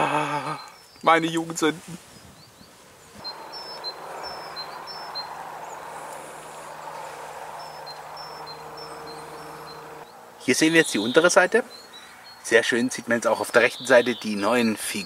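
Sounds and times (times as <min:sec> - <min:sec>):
high-pitched chirps: 0:03.2 - 0:10.0.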